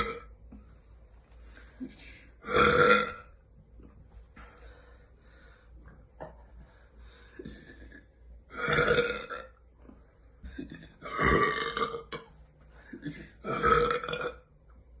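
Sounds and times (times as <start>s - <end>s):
woman burping loudly: 0.0s - 0.3s, 2.4s - 3.4s, 7.4s - 9.6s, 10.6s - 12.3s, 13.0s - 14.5s.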